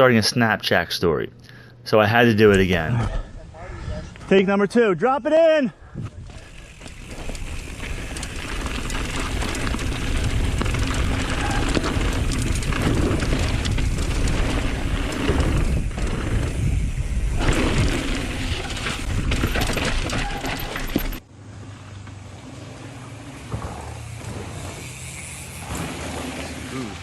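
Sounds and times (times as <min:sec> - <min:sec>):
bike tyres rattling over dirt: 0:06.2 - 0:27.0
wind buffeting microphone: 0:07.0 - 0:19.5.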